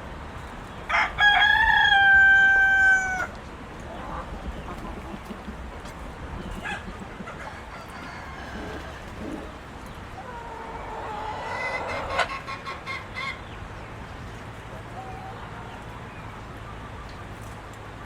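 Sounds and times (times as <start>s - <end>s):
rooster crowing: 0.9s - 3.3s, 7.4s - 9.5s
chickens clucking: 0.9s - 17.6s.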